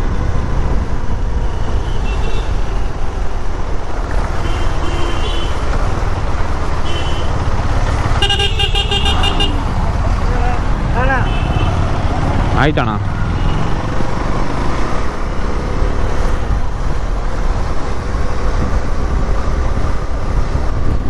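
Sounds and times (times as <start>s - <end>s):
traffic engine rumble: 0.0s - 21.0s
vehicle horns honking: 1.4s - 3.0s, 4.3s - 5.7s, 6.8s - 7.5s, 8.1s - 9.7s, 11.0s - 12.0s, 13.2s - 13.9s.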